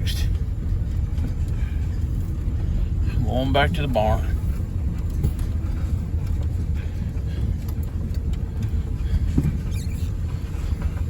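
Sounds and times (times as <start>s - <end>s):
vehicle engine and wheels rumbling: 0.0s - 11.0s.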